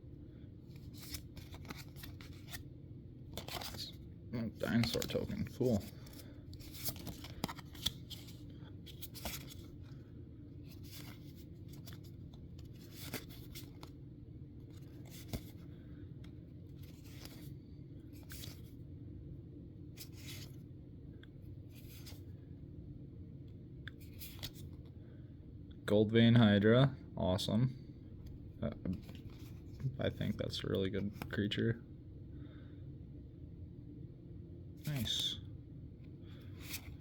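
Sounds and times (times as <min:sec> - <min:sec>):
low room hum: 0:00.0 - 0:37.0
cards swishing and clicking: 0:00.7 - 0:02.6, 0:03.3 - 0:04.0, 0:04.6 - 0:09.8, 0:10.7 - 0:14.0, 0:14.6 - 0:17.5, 0:18.1 - 0:18.7, 0:20.0 - 0:20.6, 0:23.9 - 0:24.8, 0:36.5 - 0:37.0.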